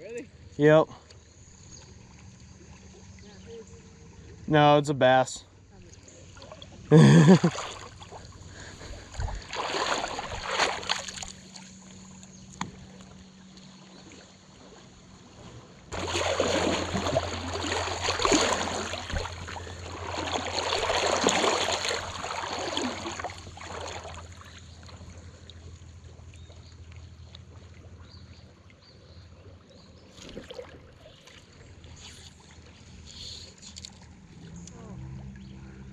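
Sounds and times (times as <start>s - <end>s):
river water sloshing and splashing: 0.3s - 4.5s, 5.5s - 35.9s
steady low hum: 5.2s - 30.1s.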